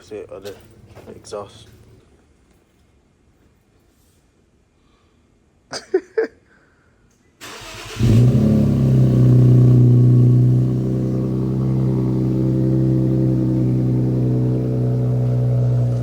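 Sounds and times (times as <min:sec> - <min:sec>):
car engine starting and idling: 0:07.4 - 0:16.0.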